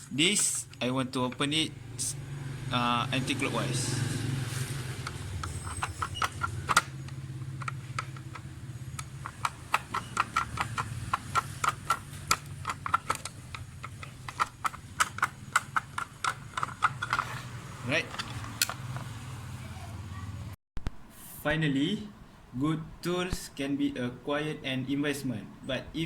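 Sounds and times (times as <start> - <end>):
screwdriver clicking: 5.0 - 17.5, 18.1 - 19.0.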